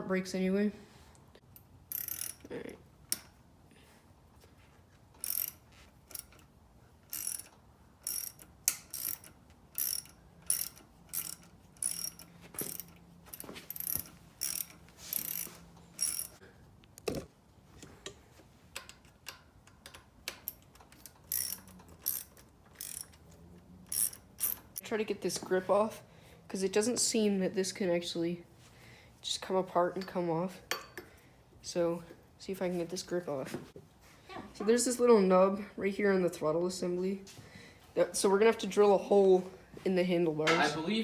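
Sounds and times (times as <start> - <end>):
ratchet wrench clicking: 1.6 - 2.5, 5.2 - 6.5, 7.1 - 16.4, 18.8 - 23.2, 23.9 - 24.8.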